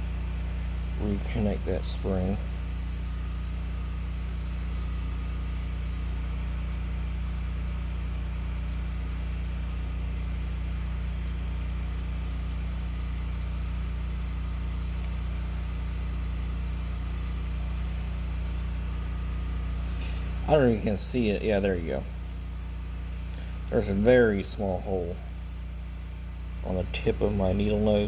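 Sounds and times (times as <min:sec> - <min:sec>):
steady low hum: 0:00.0 - 0:28.0
faint light clicks: 0:07.0 - 0:07.6.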